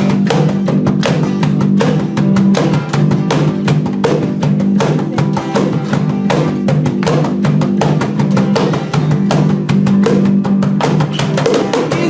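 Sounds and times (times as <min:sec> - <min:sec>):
bass guitar: 0:00.0 - 0:12.0
drum kit beat: 0:00.0 - 0:12.0
strummed guitar: 0:00.0 - 0:12.0.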